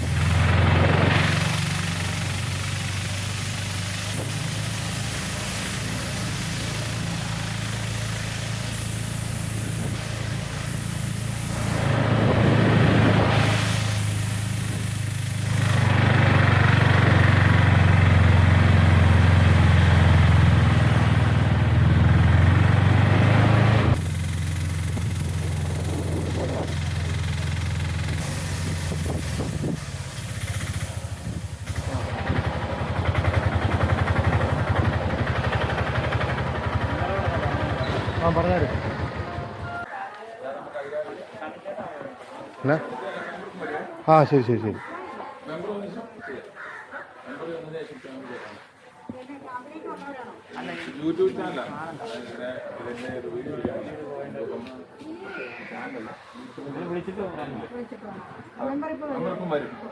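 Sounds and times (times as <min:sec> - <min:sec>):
engine humming: 0:00.0 - 0:39.9
rushing noise: 0:00.0 - 0:39.9.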